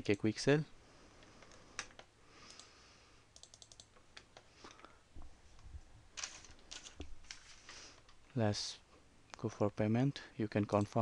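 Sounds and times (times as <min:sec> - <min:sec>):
faint computer clicks: 0:01.2 - 0:02.8, 0:03.4 - 0:04.9.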